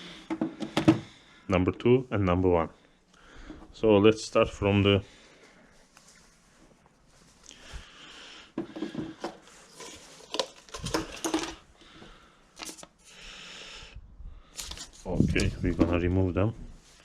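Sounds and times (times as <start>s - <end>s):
plastic rustling: 9.4s - 11.7s.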